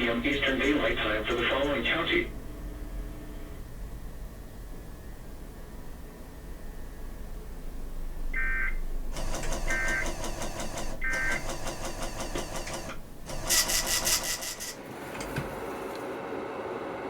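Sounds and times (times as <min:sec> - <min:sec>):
rapid repeating buzzing: 0:09.1 - 0:14.8.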